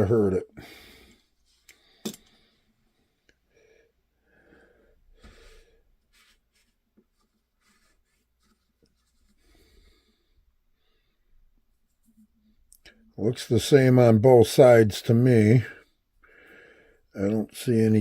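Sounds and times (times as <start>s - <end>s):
small parts handling noises: 1.5s - 2.4s.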